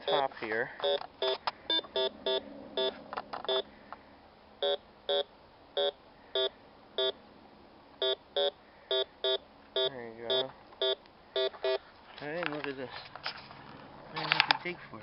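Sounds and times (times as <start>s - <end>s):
metal detector beeps: 0.0s - 3.7s, 4.6s - 7.2s, 8.0s - 11.8s.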